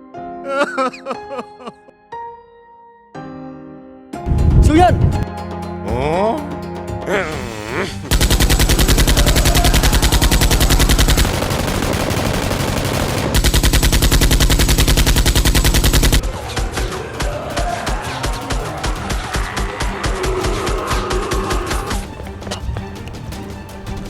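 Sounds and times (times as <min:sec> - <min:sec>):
rapid machine gun fire: 0:08.1 - 0:21.9.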